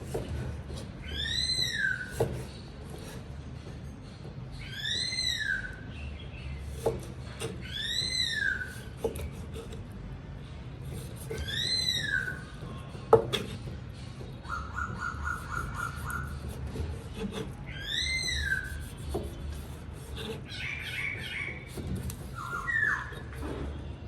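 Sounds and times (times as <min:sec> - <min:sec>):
bird trill: 0:01.0 - 0:02.2, 0:04.5 - 0:06.7, 0:07.5 - 0:09.0, 0:11.3 - 0:13.0, 0:14.1 - 0:16.6, 0:17.6 - 0:19.4, 0:20.0 - 0:23.4
bird calls rising and falling: 0:04.6 - 0:06.2, 0:11.4 - 0:12.6, 0:14.4 - 0:16.4, 0:17.7 - 0:18.8, 0:20.4 - 0:23.3.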